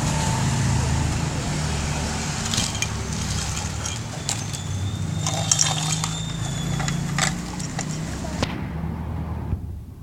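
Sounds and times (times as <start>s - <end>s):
plastic toys clicking and tapping: 2.4s - 8.3s.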